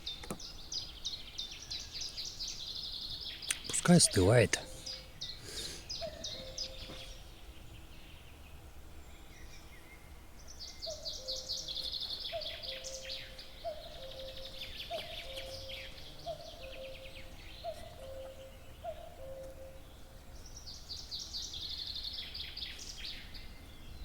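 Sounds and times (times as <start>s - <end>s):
nightingale singing trills: 0.0s - 24.0s.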